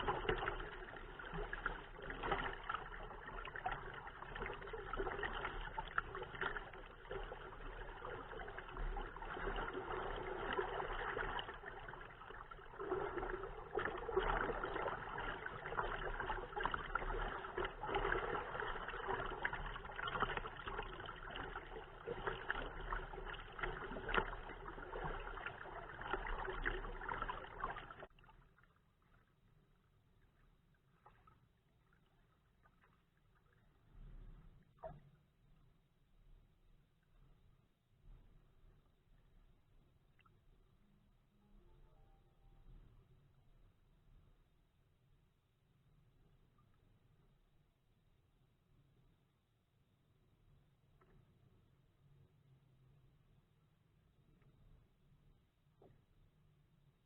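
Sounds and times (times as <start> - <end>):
waves lapping against kayak: 0.0 - 29.3.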